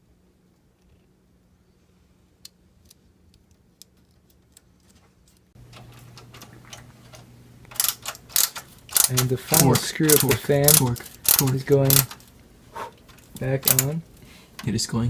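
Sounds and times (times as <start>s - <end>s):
ratcheting screwdriver clicking: 7.7s - 12.2s.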